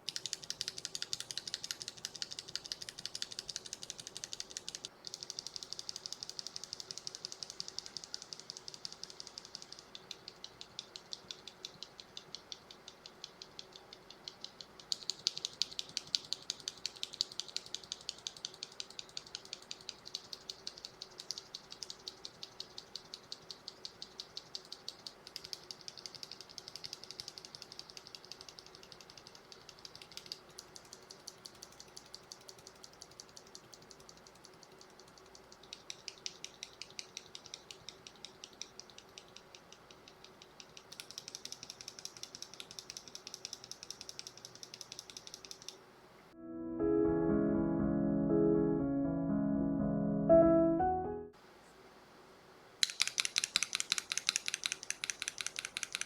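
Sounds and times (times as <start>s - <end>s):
keyboard switches clicking: 52.8s - 56.0s.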